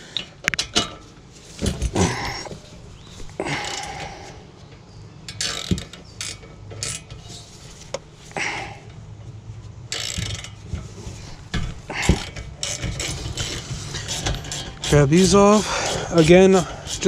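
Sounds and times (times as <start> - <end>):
metallic clicks and scrapes of tools: 3.6 - 8.4, 9.9 - 17.0.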